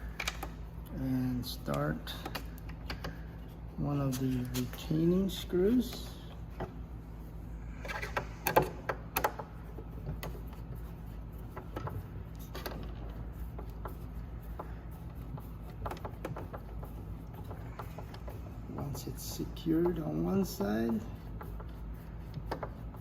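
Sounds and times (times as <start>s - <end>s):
low steady hum: 0.0s - 23.0s
screw clicks and knocks in plastic: 15.7s - 16.8s.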